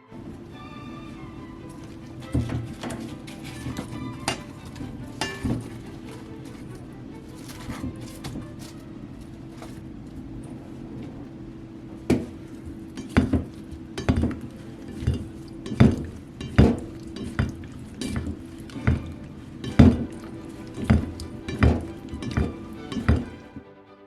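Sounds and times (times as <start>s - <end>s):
utensil knocking against bowl: 1.7s - 6.2s, 12.9s - 23.4s.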